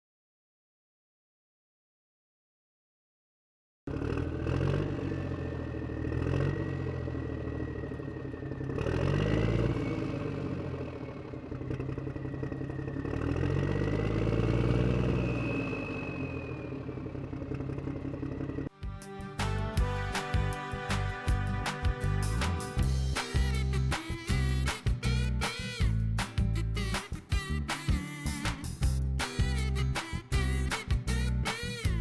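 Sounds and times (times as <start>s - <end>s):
engine revving: 3.9s - 18.7s, 19.4s - 32.0s
music: 18.7s - 32.0s.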